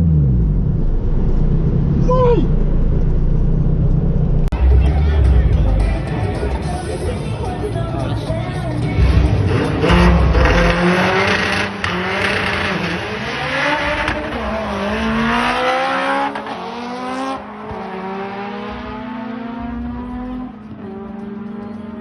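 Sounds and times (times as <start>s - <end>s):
car engine accelerating hard: 8.8s - 22.0s.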